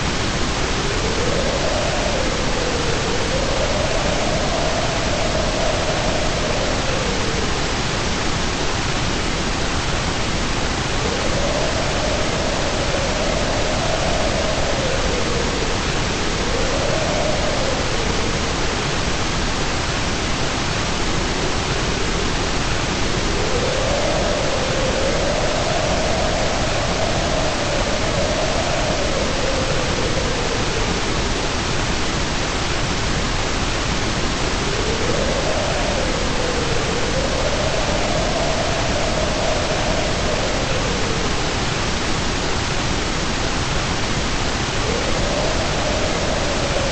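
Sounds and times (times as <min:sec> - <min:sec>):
loud white noise hiss: 0:00.0 - 0:46.9.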